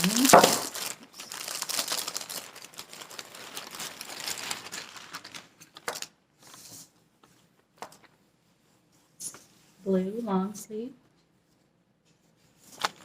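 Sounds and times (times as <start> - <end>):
packaging crinkling and rustling: 0.0 - 6.7, 12.6 - 13.0.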